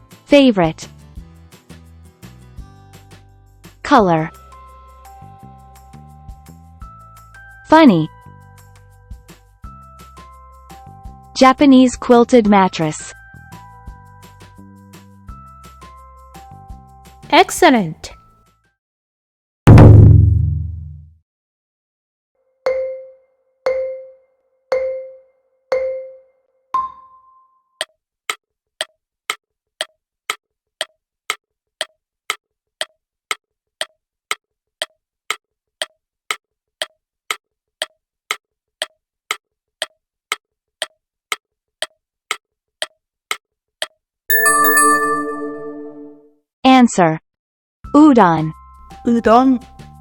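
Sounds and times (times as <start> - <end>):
countdown beeps: 44.3 - 46.2.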